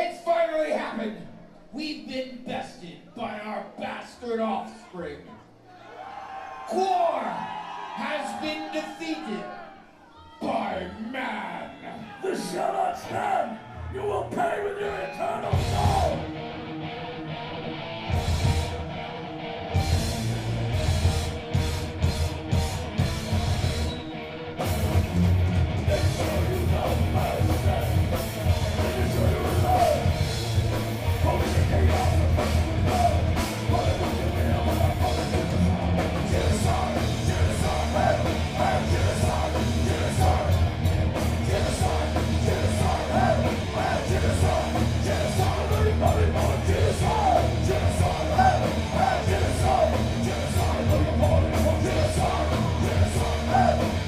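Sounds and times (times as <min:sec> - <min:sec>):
heavy metal band playing live: 0:15.4 - 0:54.0.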